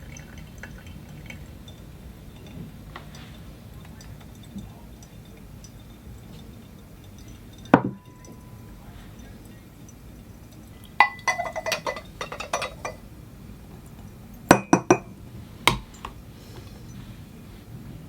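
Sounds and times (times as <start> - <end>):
coffee ware clinking: 11.0 - 13.3, 14.5 - 17.0.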